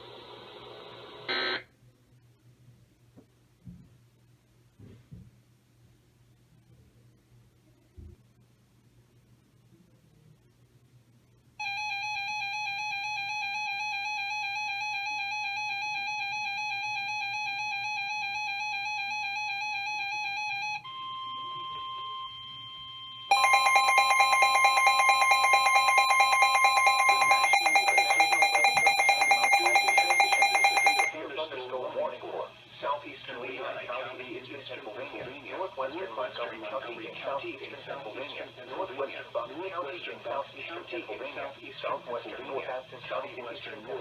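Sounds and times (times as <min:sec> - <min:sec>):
rapidly pulsing alarm: 0:11.6 - 0:20.8, 0:23.0 - 0:31.2
warbling alarm tone: 0:23.3 - 0:31.2.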